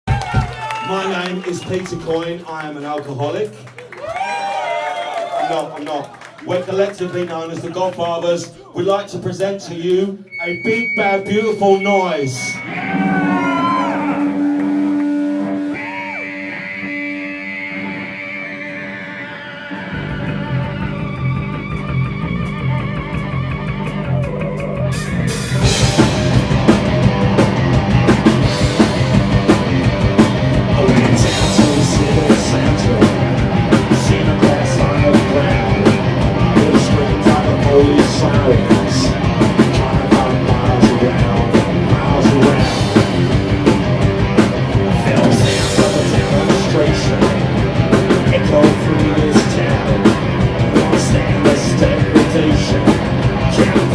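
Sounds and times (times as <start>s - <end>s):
bass guitar: 10.3s - 53.9s
electric guitar: 12.5s - 53.9s
fast punk rock drum beat: 20.2s - 53.9s.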